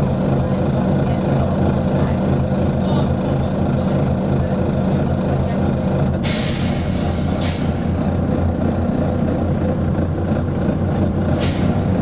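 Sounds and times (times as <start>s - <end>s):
diesel engine running: 0.0s - 12.0s
bus air brakes hissing: 6.2s - 8.1s, 11.2s - 12.0s.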